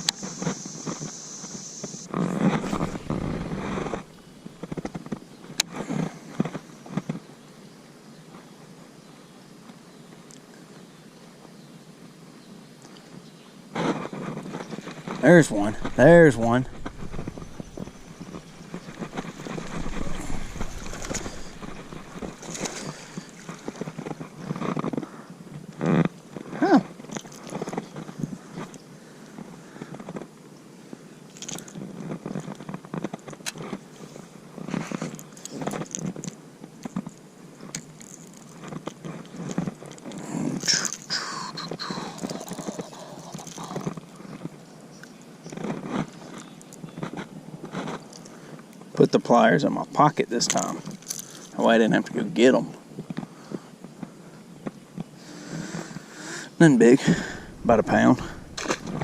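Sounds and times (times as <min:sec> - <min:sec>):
fishing handling rustling and clicking: 0:14.4 - 0:25.1, 0:31.3 - 0:33.8, 0:34.7 - 0:41.1, 0:42.2 - 0:44.6, 0:50.4 - 0:51.6, 0:57.1 - 0:59.0
fish being handled knocks and rustles: 0:14.5 - 0:24.9.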